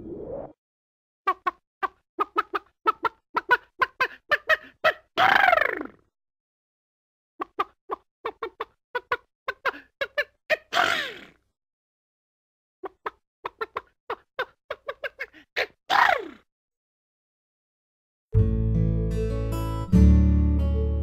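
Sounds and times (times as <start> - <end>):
chicken clucking: 1.3 - 5.0, 7.4 - 10.9, 12.8 - 15.7.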